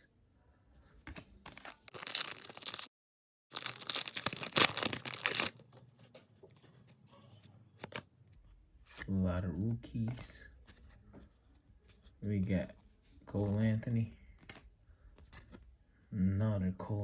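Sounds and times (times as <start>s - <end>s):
card pack wrapper tearing and crinkling: 1.5s - 2.9s, 3.5s - 5.6s.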